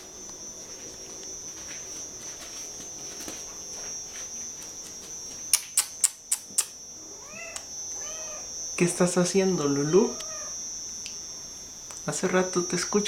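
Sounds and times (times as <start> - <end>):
faint scattered ticks: 0.0 - 13.0
steady high-pitched tone: 0.0 - 13.0
sharp clicks: 5.5 - 6.8.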